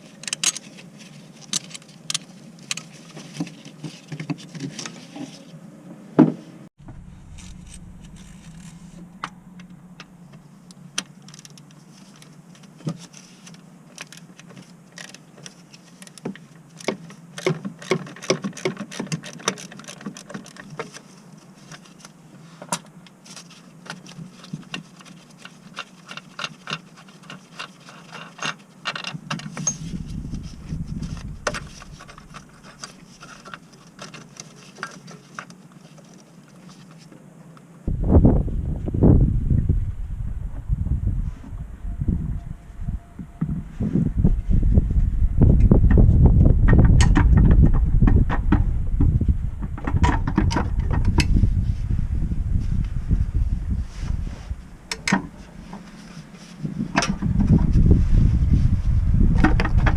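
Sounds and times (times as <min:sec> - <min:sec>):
steady low hum: 0:05.3 - 0:17.4, 0:28.5 - 0:59.9.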